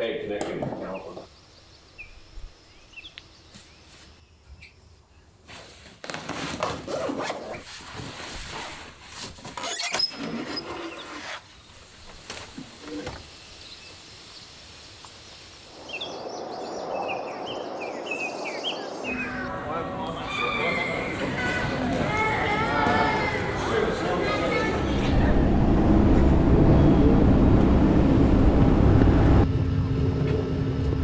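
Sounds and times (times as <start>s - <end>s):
birds chirping: 0.0s - 5.3s, 10.9s - 25.3s
steady rushing noise: 15.6s - 20.2s, 23.2s - 31.0s.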